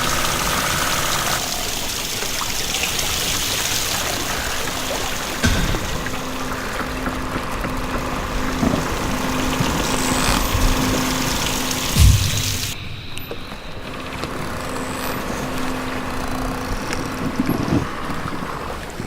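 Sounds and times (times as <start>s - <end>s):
water streaming and splashing: 0.0s - 19.0s
steady motor hum: 3.9s - 19.0s
heavy thump: 5.4s - 6.3s, 12.0s - 14.3s.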